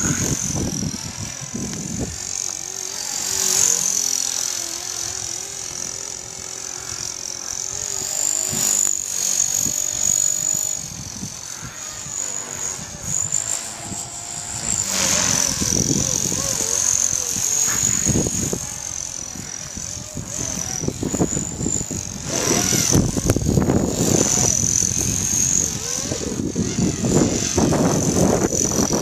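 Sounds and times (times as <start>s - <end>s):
wind buffeting microphone: 0.0s - 3.6s, 7.7s - 29.0s
rc helicopter rotor whine: 0.0s - 29.0s.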